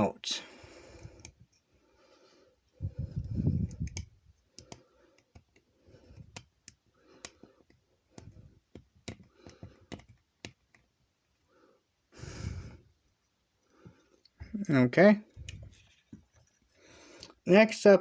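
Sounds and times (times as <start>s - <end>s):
dull handling noise: 15.3s - 16.7s.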